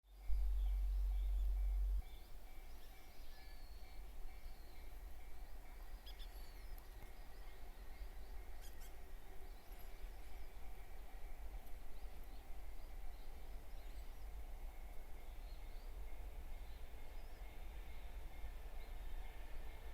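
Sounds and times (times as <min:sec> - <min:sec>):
low rumble: 0:00.1 - 0:02.2.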